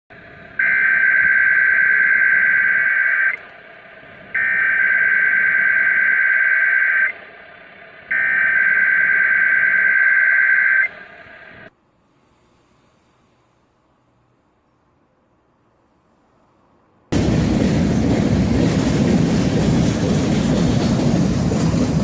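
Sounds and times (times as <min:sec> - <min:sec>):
radio receiver hiss: 0:00.3 - 0:13.6
harsh data tone bursts: 0:00.6 - 0:03.5, 0:04.4 - 0:07.2, 0:08.0 - 0:11.7.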